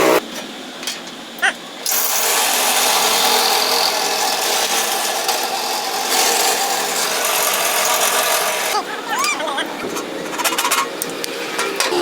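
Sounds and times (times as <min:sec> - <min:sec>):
power tool grinding: 0:00.0 - 0:00.2, 0:01.8 - 0:08.9.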